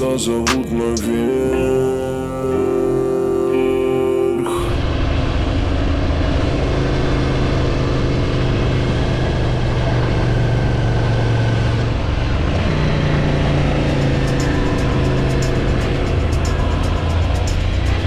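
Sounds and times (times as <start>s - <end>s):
motorcycle engine running: 7.4s - 18.0s.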